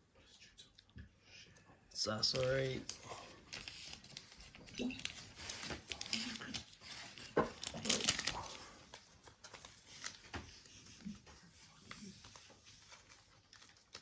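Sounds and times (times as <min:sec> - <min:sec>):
trading cards clicking and rustling: 0:02.2 - 0:10.3.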